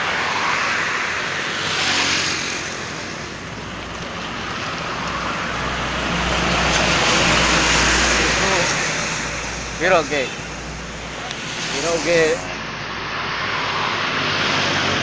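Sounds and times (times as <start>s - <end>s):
highway traffic rushing: 0.0s - 15.0s
large vehicle engine rumble: 2.4s - 14.2s.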